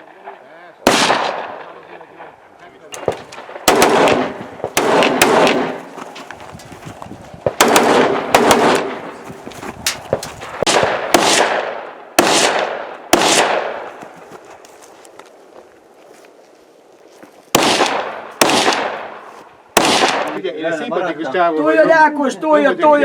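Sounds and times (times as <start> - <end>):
rifle shots echoing: 0.0 - 6.2, 7.5 - 14.0, 17.5 - 20.4.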